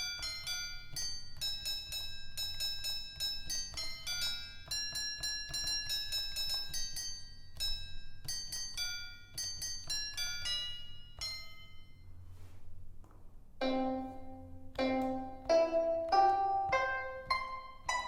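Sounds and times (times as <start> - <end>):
keyboard playing plucked melody: 0.0 - 8.5, 13.6 - 18.0.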